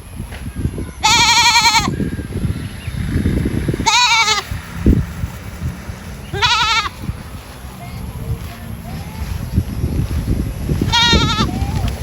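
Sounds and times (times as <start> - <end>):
goat bleating: 1.0 - 2.0, 3.8 - 4.6, 6.2 - 7.1, 10.8 - 11.9.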